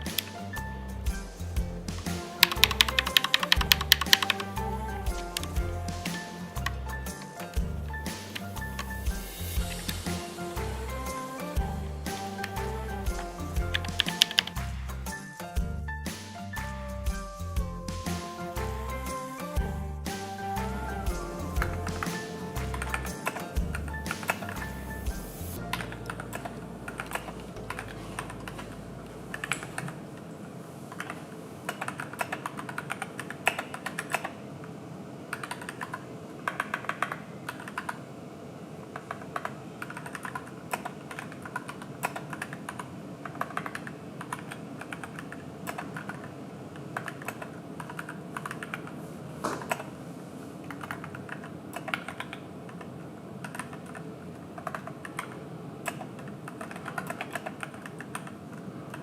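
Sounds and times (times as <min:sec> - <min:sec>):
mechanical keyboard key clicks: 0:02.4 - 0:04.4, 0:14.0 - 0:14.6.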